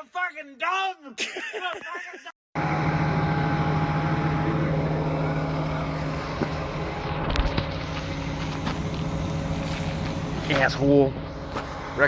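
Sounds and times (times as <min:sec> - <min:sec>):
diesel engine droning: 0:02.6 - 0:12.0.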